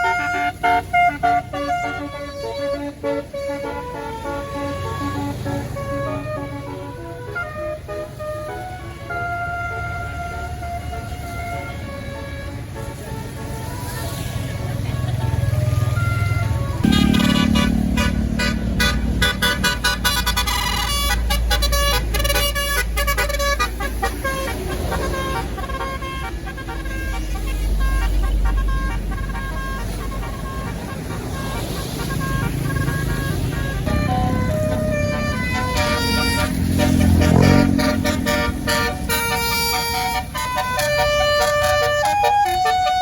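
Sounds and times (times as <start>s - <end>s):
bus engine rumble: 0.0s - 43.0s
bus horn playing a tune: 0.0s - 43.0s.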